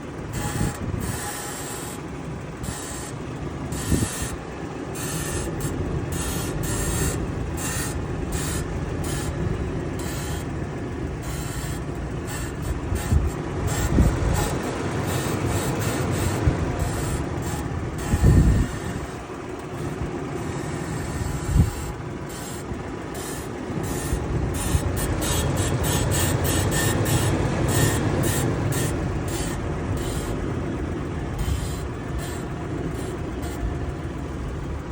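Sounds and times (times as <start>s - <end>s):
vehicle engine hum: 0.0s - 34.9s
ball joint creaking: 11.2s - 30.4s.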